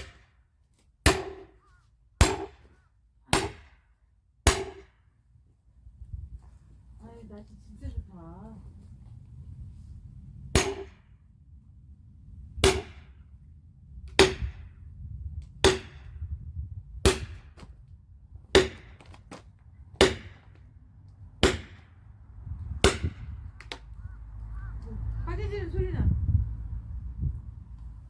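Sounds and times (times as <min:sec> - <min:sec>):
axe chopping firewood: 0:00.0 - 0:00.4, 0:01.0 - 0:02.7, 0:03.3 - 0:03.8, 0:04.4 - 0:05.0, 0:10.6 - 0:11.0, 0:12.6 - 0:13.1, 0:14.1 - 0:14.6, 0:15.6 - 0:16.1, 0:17.0 - 0:17.7, 0:18.5 - 0:19.4, 0:20.0 - 0:20.6, 0:21.4 - 0:21.9, 0:22.8 - 0:23.8.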